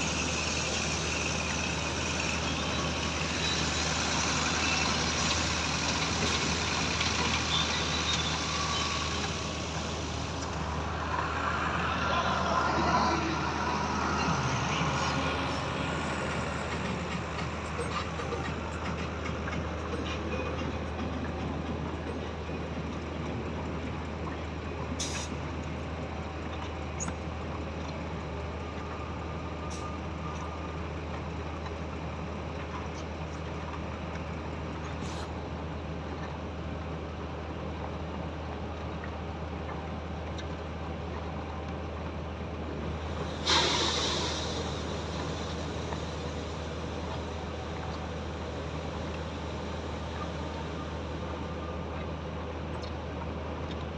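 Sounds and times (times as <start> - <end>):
diesel engines humming: 0.0 - 53.9
burst of hissing air: 43.3 - 46.8.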